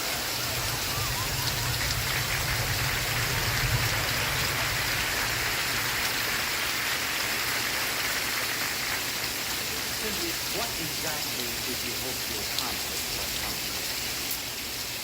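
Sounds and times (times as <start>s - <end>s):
steady rain falling: 0.0s - 15.0s
low rumble: 0.1s - 6.9s.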